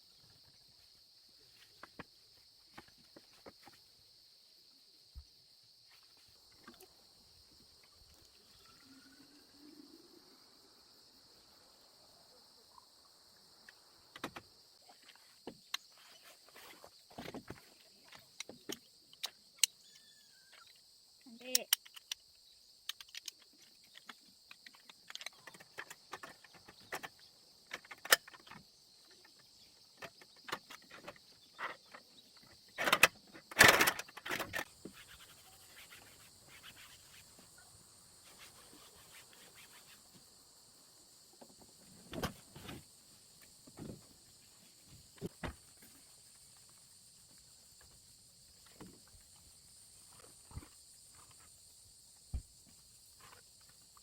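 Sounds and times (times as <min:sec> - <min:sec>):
crickets chirping: 0:00.0 - 0:54.0
small clicks and knocks of handling: 0:20.6 - 0:29.4.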